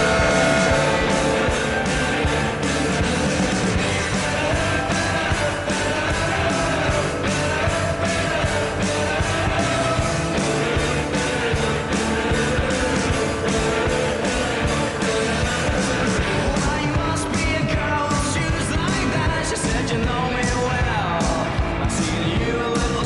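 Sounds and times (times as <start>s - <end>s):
goal horn: 0.0s - 4.2s
person singing: 0.0s - 23.0s
rock song with electric guitar: 0.0s - 23.0s.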